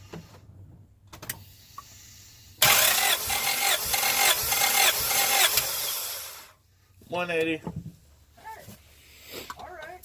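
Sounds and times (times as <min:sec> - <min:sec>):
starter motor cranking engine: 0:02.6 - 0:06.5.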